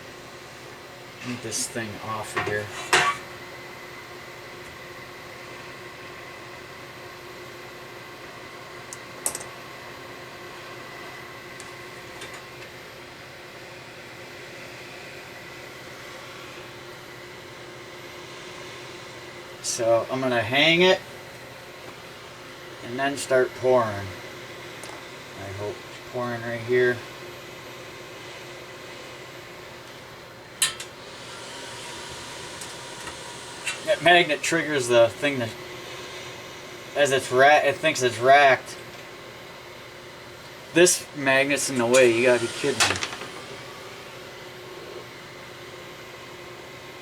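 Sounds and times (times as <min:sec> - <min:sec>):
steady hum and hiss: 0:00.0 - 0:47.0
steady hiss: 0:30.6 - 0:38.9, 0:40.6 - 0:46.0.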